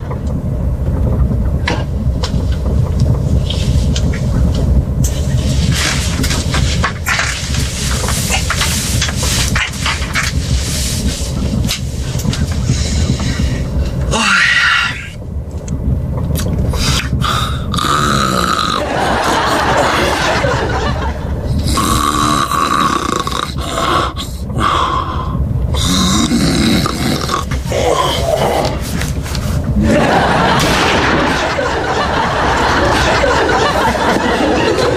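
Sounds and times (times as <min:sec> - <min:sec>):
person snoring loudly: 0:16.7 - 0:18.9, 0:21.6 - 0:28.9.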